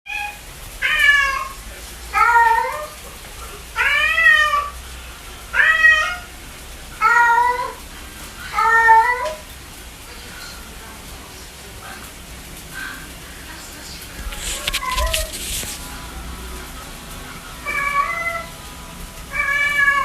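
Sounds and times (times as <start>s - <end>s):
cat meowing: 0.1s - 3.0s, 3.8s - 4.8s, 5.5s - 6.3s, 7.0s - 7.8s, 8.5s - 9.4s, 14.3s - 15.8s, 17.6s - 18.6s, 19.3s - 20.0s.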